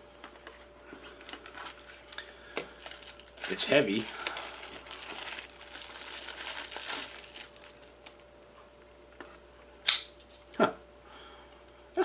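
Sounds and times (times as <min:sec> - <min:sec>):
packaging crinkling and rustling: 0:00.2 - 0:08.3.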